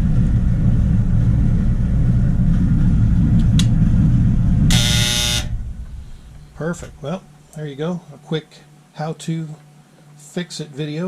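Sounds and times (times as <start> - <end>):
clothes dryer rumbling: 0.0 - 8.0
short buzzing tone: 4.7 - 6.7.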